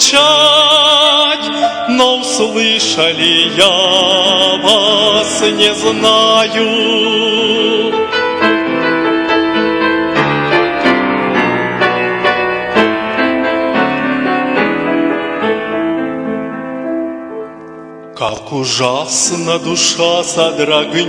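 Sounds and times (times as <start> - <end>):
keyboard playing piano-like chords: 0.0 - 18.5.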